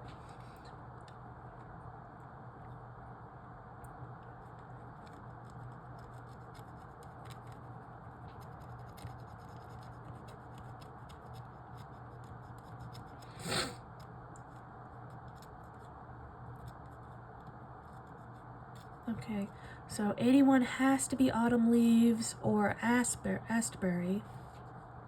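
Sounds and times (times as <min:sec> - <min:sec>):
steady low hum: 0:00.0 - 0:25.0
pen scratching on paper: 0:08.4 - 0:13.7.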